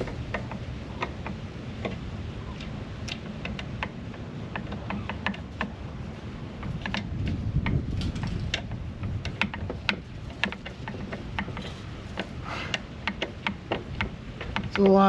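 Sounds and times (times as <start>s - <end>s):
hand tools clicking: 0.0s - 15.0s
low steady rumble: 0.0s - 15.0s.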